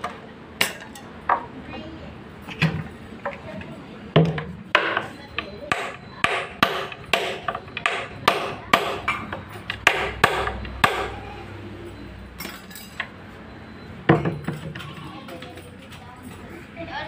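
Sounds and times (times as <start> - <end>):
hammer striking: 4.2 - 11.3.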